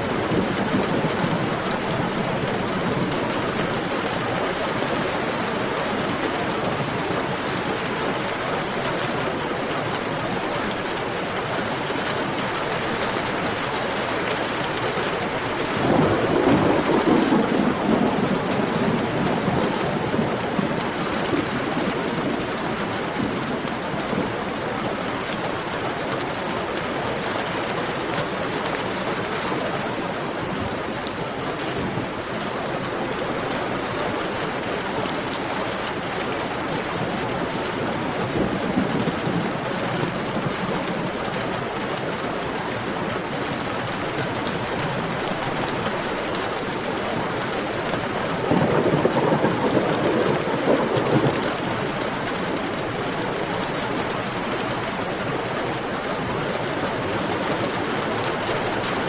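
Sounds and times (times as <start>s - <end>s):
heavy rain falling: 0.0s - 59.0s
thunder rumble: 15.3s - 24.3s, 35.8s - 41.2s, 47.9s - 53.6s.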